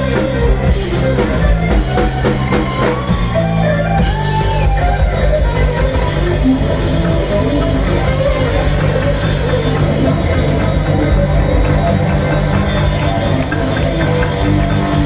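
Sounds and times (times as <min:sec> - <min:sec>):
live rock band playing: 0:00.0 - 0:15.0.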